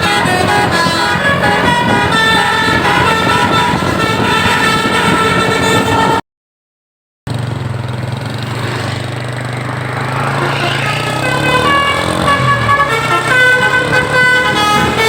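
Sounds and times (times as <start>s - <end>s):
bus engine humming: 0.0s - 6.2s, 7.3s - 15.0s
musical bus horn: 0.0s - 6.2s, 10.1s - 15.0s.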